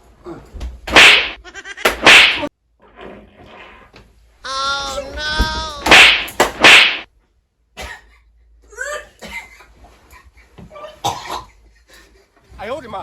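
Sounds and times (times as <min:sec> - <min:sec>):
person coughing: 0:07.8 - 0:08.2, 0:11.0 - 0:11.6.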